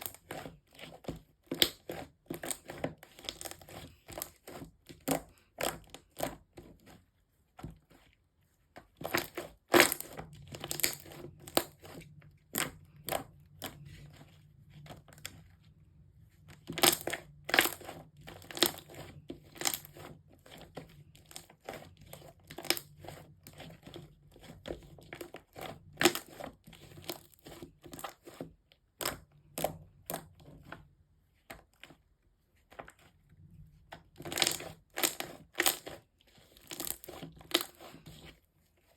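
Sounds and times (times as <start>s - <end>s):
slime squishing and popping: 9.0s - 13.8s, 16.6s - 20.0s, 34.2s - 36.0s, 36.6s - 37.7s.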